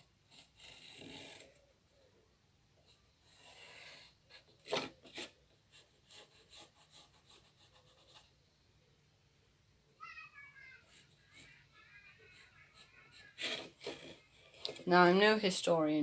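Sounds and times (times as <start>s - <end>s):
pencil scratching on wood: 0.0s - 1.7s, 2.8s - 8.4s, 10.8s - 15.4s.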